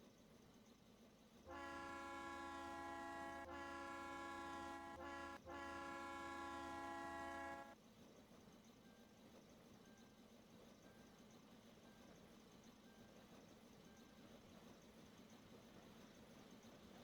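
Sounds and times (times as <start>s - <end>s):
steam locomotive whistle: 1.5s - 7.8s.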